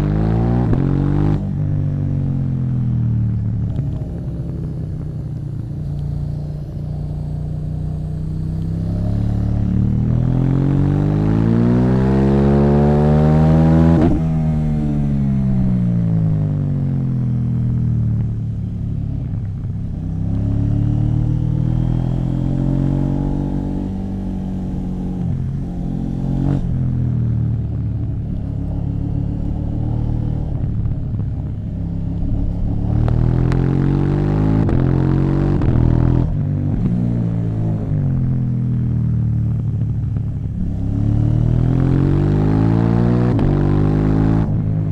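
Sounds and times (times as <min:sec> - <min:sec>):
motorcycle engine revving: 0:00.0 - 0:44.9
exhaust crack: 0:03.3 - 0:09.0.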